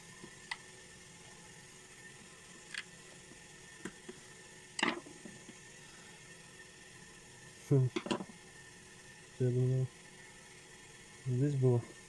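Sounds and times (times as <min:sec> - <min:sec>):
faint steady hiss: 0:00.0 - 0:12.0
small parts clicking and tapping: 0:00.2 - 0:00.7, 0:02.7 - 0:02.9, 0:04.8 - 0:05.6, 0:07.9 - 0:08.3
plastic parts clattering: 0:07.9 - 0:08.3.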